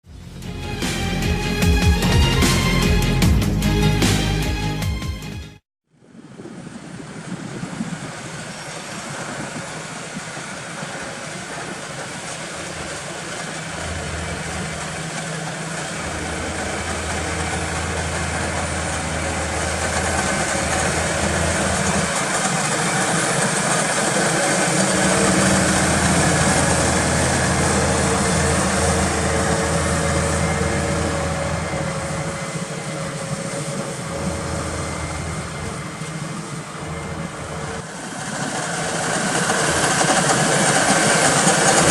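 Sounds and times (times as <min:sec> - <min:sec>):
tractor diesel engine under load: 0:10.8 - 0:41.9.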